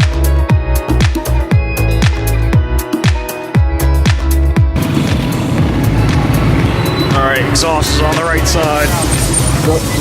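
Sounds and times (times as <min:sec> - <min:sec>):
heavy bass line: 0:03.6 - 0:10.0
thumping kick drum: 0:04.1 - 0:07.2.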